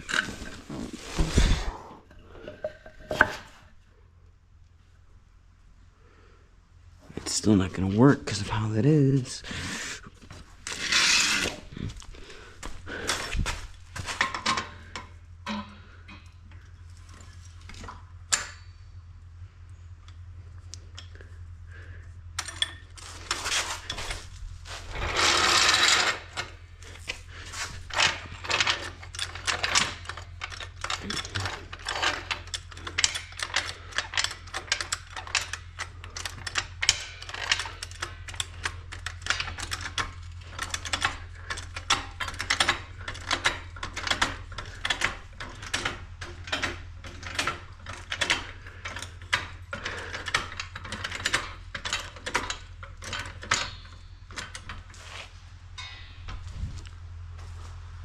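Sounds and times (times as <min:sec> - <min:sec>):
metal tools clinking: 0:22.4 - 0:56.5.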